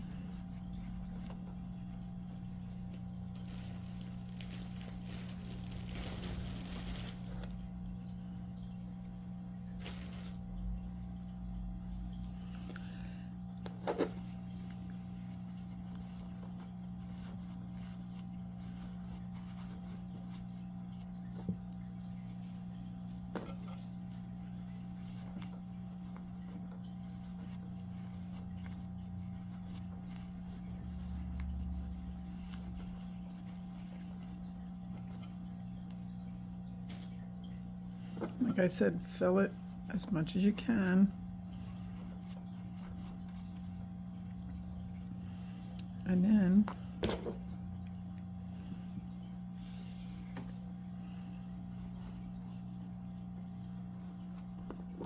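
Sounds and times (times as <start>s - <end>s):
soft handling noises: 0.0s - 11.2s
steady low hum: 0.0s - 55.0s.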